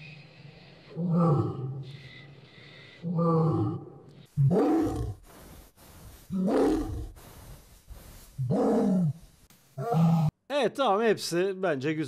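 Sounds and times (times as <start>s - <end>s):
lion roars: 0.8s - 2.1s, 3.0s - 5.2s, 6.3s - 7.2s, 8.4s - 9.2s, 9.8s - 10.3s.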